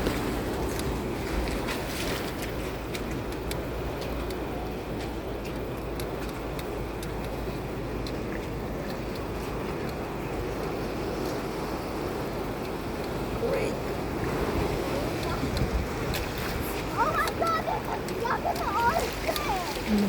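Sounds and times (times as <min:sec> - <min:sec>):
engine and tyre rumble: 0:00.0 - 0:20.0
light clicks and rattles: 0:15.1 - 0:20.0.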